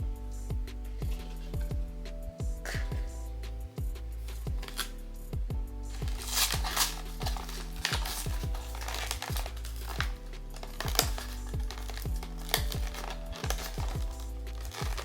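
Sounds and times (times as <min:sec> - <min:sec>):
background music with bass drum beat: 0:00.0 - 0:15.0
packaging crinkling: 0:04.6 - 0:05.0, 0:05.9 - 0:15.0.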